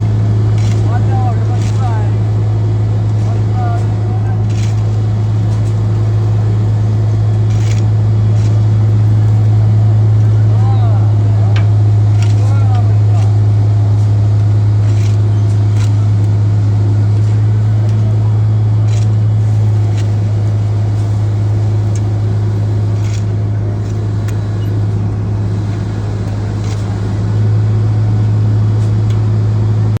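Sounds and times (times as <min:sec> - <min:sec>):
diesel engine running: 0:00.0 - 0:30.0
light clicks and scrapes: 0:03.0 - 0:09.6, 0:25.6 - 0:27.2.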